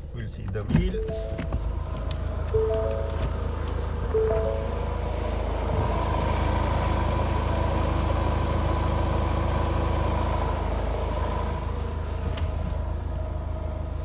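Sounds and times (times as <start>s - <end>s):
car engine idling: 0.0s - 14.0s
thin high tone: 2.6s - 5.1s.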